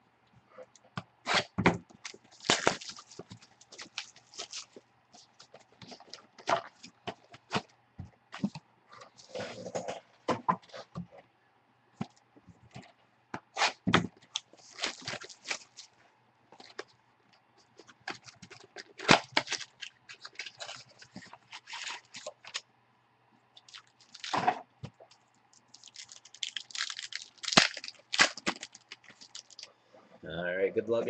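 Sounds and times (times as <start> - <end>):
wrappers crinkling and tearing: 1.3 - 7.6, 14.2 - 16.0, 17.8 - 22.6, 23.6 - 24.5, 25.1 - 29.7.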